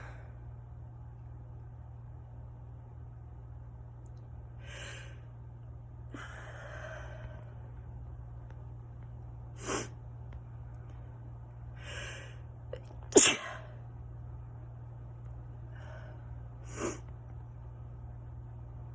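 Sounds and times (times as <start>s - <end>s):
person sneezing: 13.1s - 13.7s.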